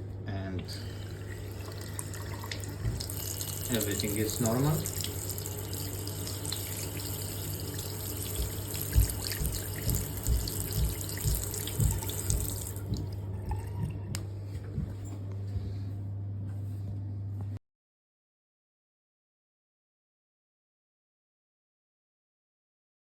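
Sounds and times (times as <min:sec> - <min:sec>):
steady low hum: 0:00.0 - 0:17.6
tap running into sink: 0:01.6 - 0:14.9.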